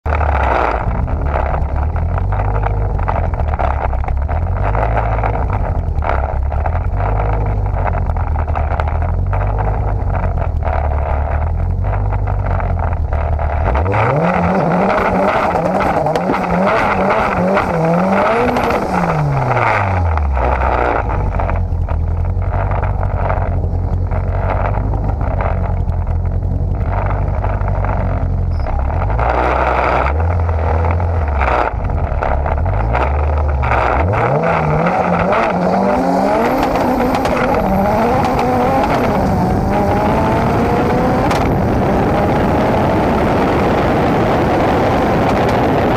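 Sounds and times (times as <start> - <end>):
car engine revving: 0.0 - 45.9.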